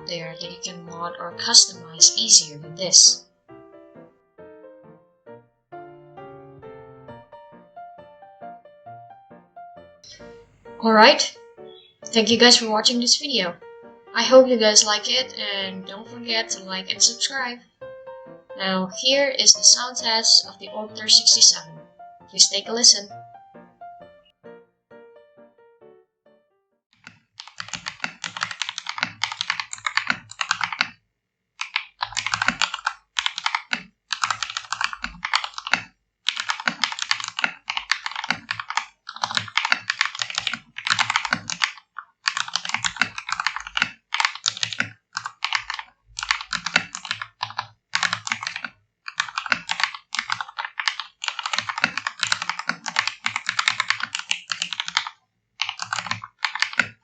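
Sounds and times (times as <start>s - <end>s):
mechanical keyboard typing: 19.4s - 21.7s, 27.0s - 31.0s, 31.6s - 57.0s.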